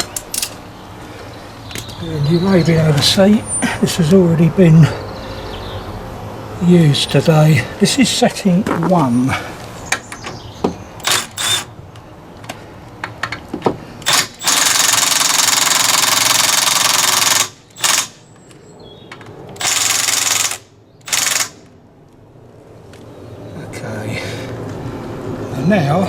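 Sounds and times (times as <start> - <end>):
impact wrench hammering: 11.0 - 11.7.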